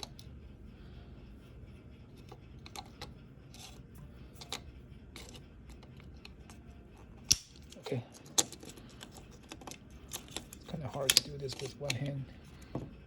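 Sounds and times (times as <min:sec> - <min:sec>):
plastic clicks and scrapes: 0:02.2 - 0:03.8, 0:04.4 - 0:06.6, 0:07.2 - 0:12.8.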